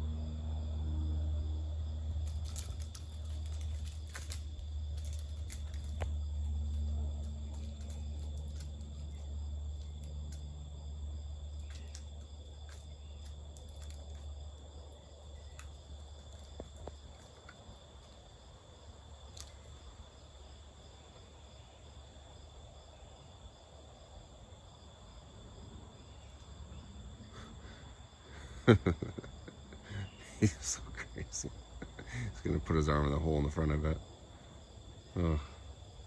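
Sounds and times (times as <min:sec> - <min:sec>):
low rumble: 0:00.0 - 0:11.9
insects chirring: 0:00.0 - 0:36.0.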